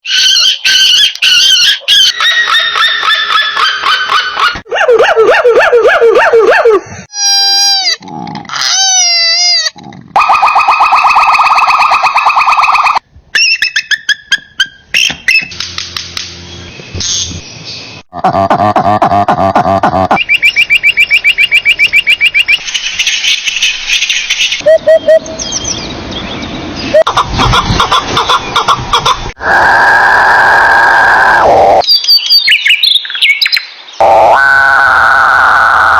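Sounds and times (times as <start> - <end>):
bird calls and songs: 16.4 - 18.0, 20.1 - 29.2, 31.8 - 34.0.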